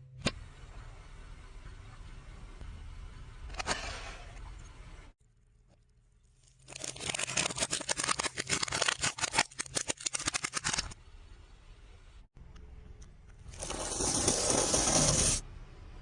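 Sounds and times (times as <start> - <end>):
crunching and crackling snaps: 6.3 - 11.0.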